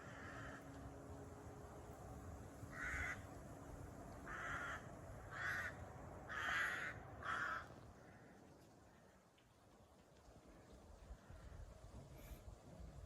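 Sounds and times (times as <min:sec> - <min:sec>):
crow cawing: 0:00.0 - 0:00.7, 0:02.7 - 0:03.2, 0:04.3 - 0:08.4.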